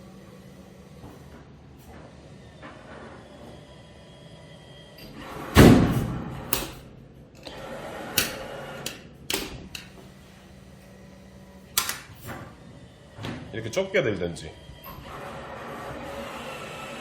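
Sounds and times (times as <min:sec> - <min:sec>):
claw machine knocks and thuds: 0:05.5 - 0:06.9.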